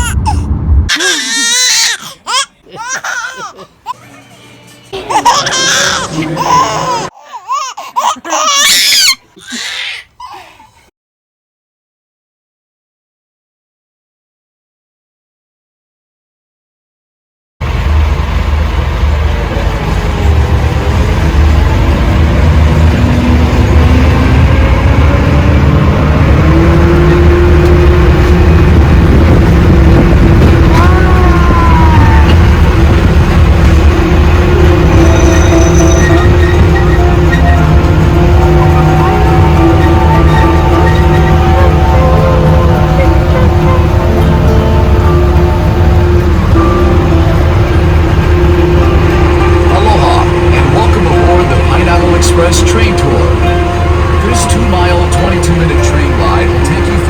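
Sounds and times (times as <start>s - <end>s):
baby laughing and squealing: 0.0s - 4.0s, 5.0s - 10.7s
train engine rumbling: 0.0s - 7.1s, 17.6s - 57.0s.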